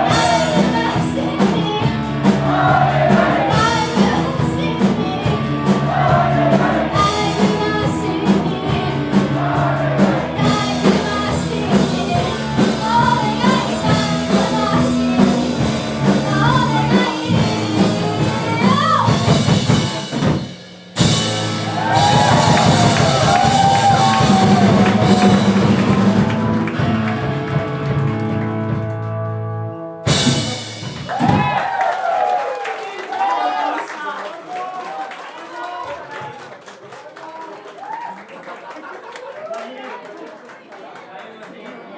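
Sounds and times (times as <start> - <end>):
person singing: 0.0 - 19.4
rock band playing live: 0.0 - 31.8.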